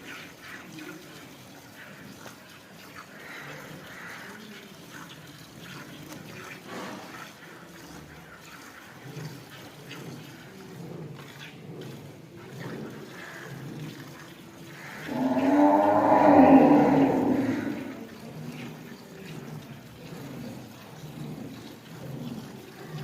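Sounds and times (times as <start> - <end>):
milk squirting into a pail: 0.1 - 23.0
cow mooing: 15.0 - 18.1.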